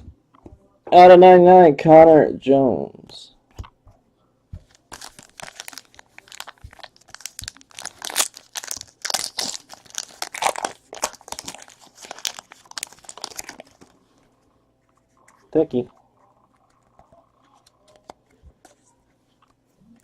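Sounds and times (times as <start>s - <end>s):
plastic wrapping crinkling and tearing: 4.7s - 14.0s.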